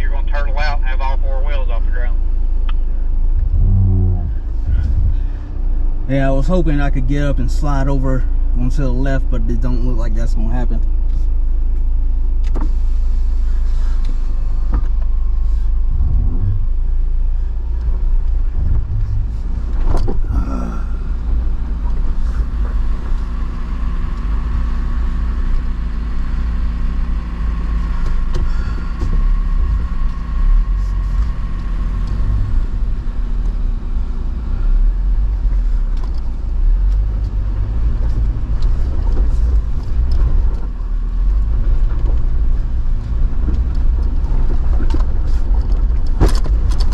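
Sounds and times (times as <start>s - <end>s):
car engine rumbling at low speed: 0.0s - 46.9s.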